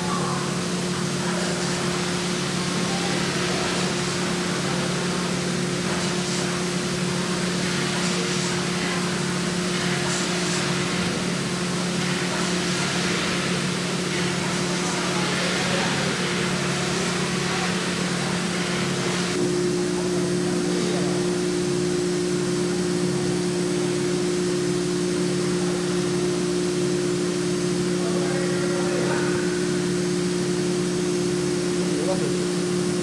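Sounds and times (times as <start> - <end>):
machine spindle motor humming: 0.0 - 33.0
hiss: 0.2 - 19.4
higher steady tone: 19.3 - 33.0.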